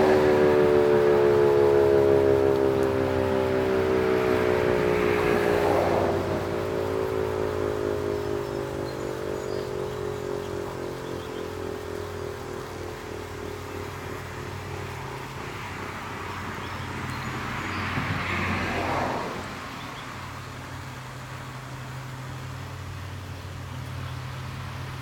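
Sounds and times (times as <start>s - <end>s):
siren winding down: 0.0s - 12.4s
steady low hum: 0.0s - 25.0s.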